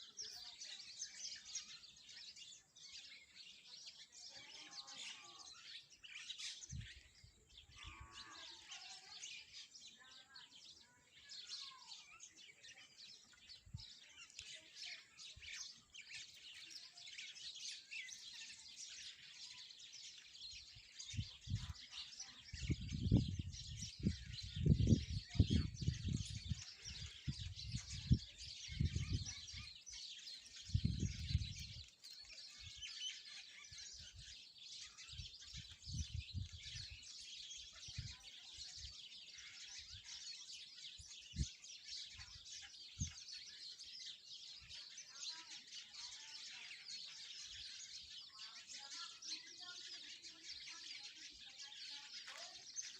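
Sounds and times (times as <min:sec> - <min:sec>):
small birds chirping: 0:00.0 - 0:52.9
wind buffeting microphone: 0:06.6 - 0:08.4, 0:21.0 - 0:21.8, 0:22.5 - 0:29.8, 0:30.6 - 0:31.9, 0:35.1 - 0:37.0, 0:37.8 - 0:38.2, 0:40.9 - 0:41.5.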